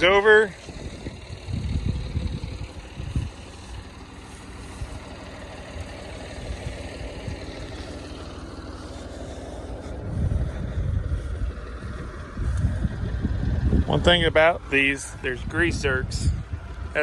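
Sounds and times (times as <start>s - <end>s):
low rumbling on microphone: 0.0s - 17.0s
tractor engine running: 0.0s - 17.0s.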